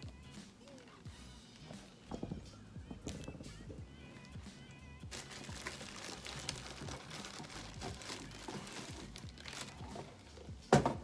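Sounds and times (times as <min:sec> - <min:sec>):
paper packing crinkling: 0:05.1 - 0:10.5.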